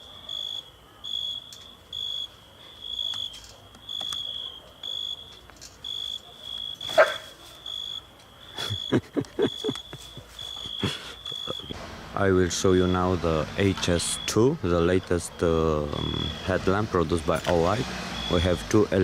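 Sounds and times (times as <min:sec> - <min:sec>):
dog barking: 0:00.0 - 0:01.3, 0:02.6 - 0:05.2, 0:06.2 - 0:07.4
cricket chirping: 0:00.0 - 0:11.8, 0:12.7 - 0:16.8, 0:18.0 - 0:18.6
dog yelping: 0:06.2 - 0:07.4.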